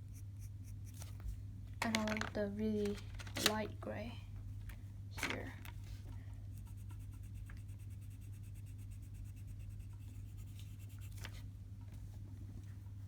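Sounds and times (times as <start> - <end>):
pencil scratching on paper: 0.0 - 1.2, 6.5 - 11.4
steady low hum: 0.0 - 13.0.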